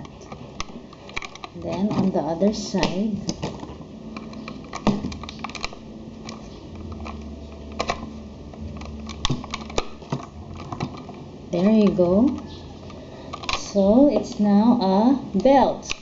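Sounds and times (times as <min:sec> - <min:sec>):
plastic toy pieces clicking: 0:00.0 - 0:14.4.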